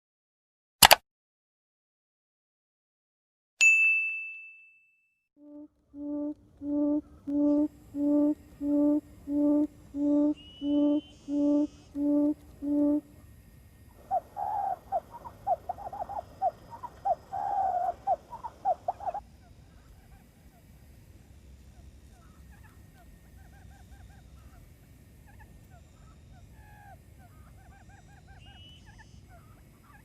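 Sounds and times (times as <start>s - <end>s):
quail hooting: 6.0s - 13.3s, 14.0s - 20.8s, 21.7s - 30.0s
quail chattering: 14.0s - 20.7s, 22.1s - 24.6s, 25.2s - 30.0s.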